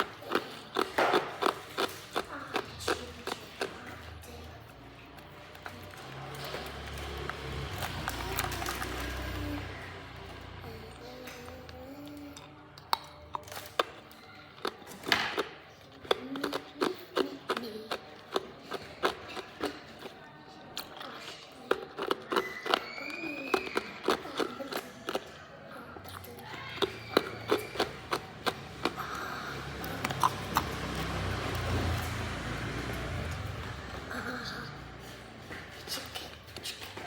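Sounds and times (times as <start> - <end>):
ice crunching in teeth: 20.7 - 25.4, 26.1 - 32.2.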